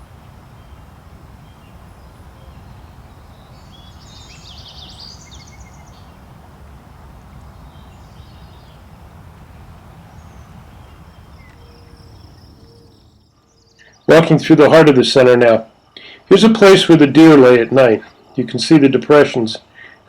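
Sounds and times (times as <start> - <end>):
low outdoor rumble: 0.0 - 13.3
songbird trilling: 0.0 - 14.8.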